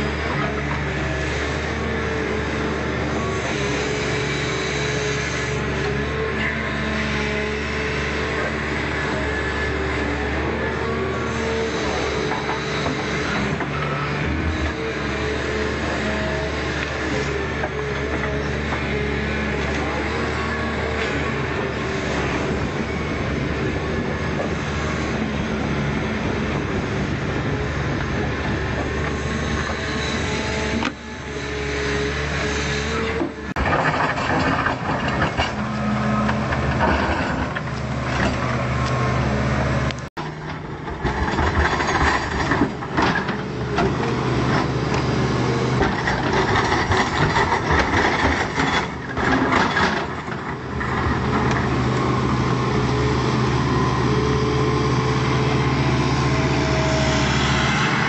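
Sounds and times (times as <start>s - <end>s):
excavator diesel engine under load: 0.0s - 58.0s.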